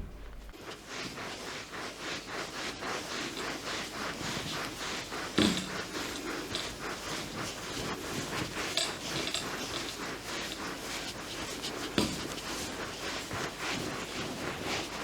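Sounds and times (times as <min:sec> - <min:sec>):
loud thump: 0:00.0 - 0:00.6
hands rubbing and patting body: 0:00.0 - 0:15.0.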